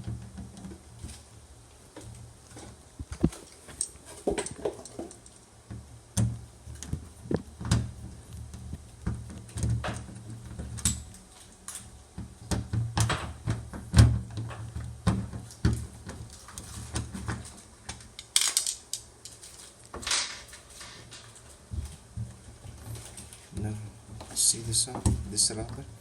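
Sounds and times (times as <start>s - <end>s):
knocks and clicks on washing machine: 12.2s - 16.2s.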